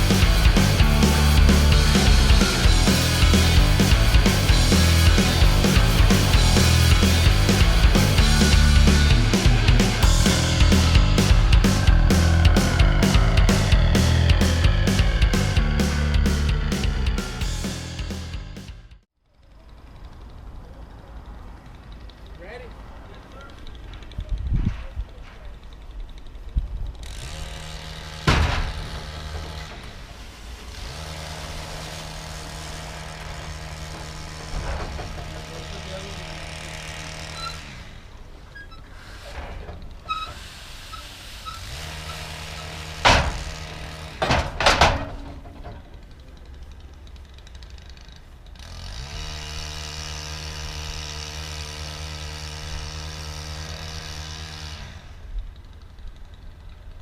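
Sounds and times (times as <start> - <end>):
motor humming: 0.0 - 18.2
motor running with hiss: 26.9 - 38.2, 38.9 - 44.2, 48.6 - 55.3.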